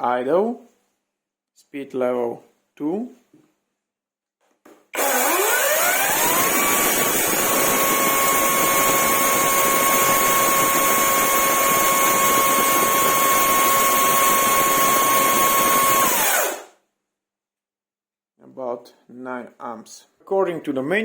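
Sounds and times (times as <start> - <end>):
chain spinning rush: 5.0 - 10.8
chainsaw whine: 5.0 - 16.8.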